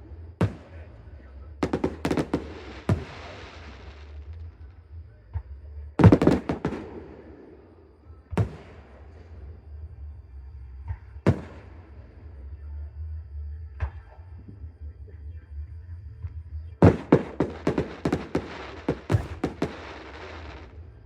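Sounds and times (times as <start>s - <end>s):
fireworks bangs: 0.4s - 4.2s, 6.0s - 7.5s, 8.3s - 9.1s, 11.1s - 12.0s, 16.8s - 20.7s
fireworks fizzing crackle: 16.8s - 20.7s.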